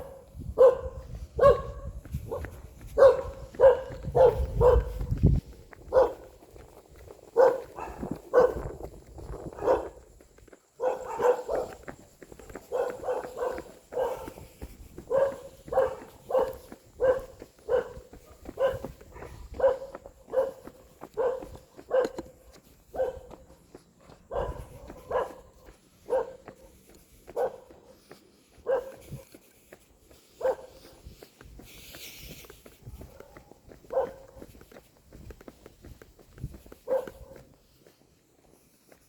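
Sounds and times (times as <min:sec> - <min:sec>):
dog barking: 0:00.0 - 0:05.2, 0:05.8 - 0:06.4, 0:07.3 - 0:08.8, 0:09.4 - 0:10.0, 0:10.8 - 0:29.4, 0:30.4 - 0:31.0, 0:32.8 - 0:35.3, 0:36.6 - 0:37.6.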